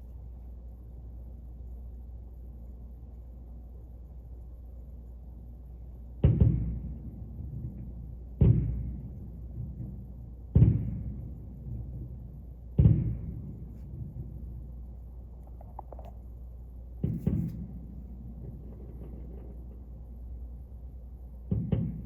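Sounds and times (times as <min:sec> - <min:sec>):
firework shells bursting: 0:17.0 - 0:20.2.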